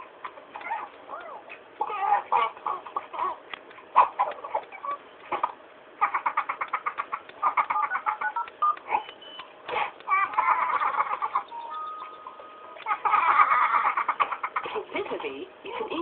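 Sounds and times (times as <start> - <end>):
birds laughing calls: 0.5 - 14.9.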